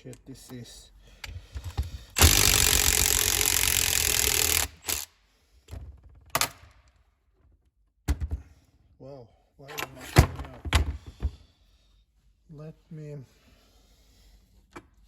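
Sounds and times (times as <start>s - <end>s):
metal parts knocking and clicking: 1.6s - 5.1s
power tool running: 2.2s - 5.1s.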